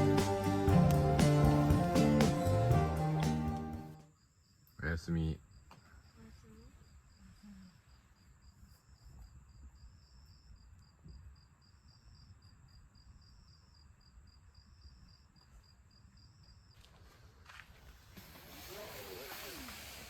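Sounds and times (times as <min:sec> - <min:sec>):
insects chirping: 0:04.0 - 0:20.0.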